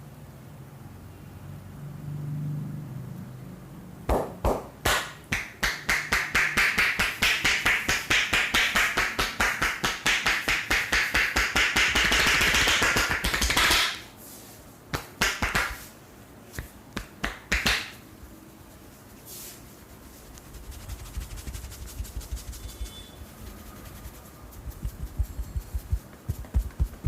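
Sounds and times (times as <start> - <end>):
hands slapping head: 4.1 - 14.0, 14.9 - 15.9, 16.5 - 18.0.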